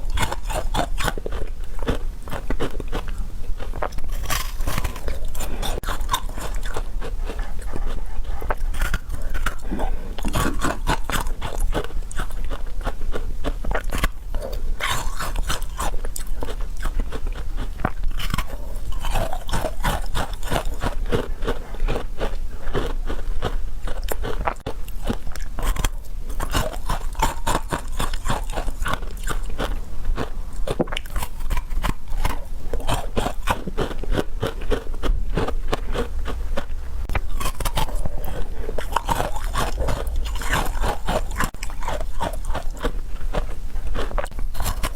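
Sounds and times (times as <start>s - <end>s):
crunchy chewing: 0.0s - 44.9s.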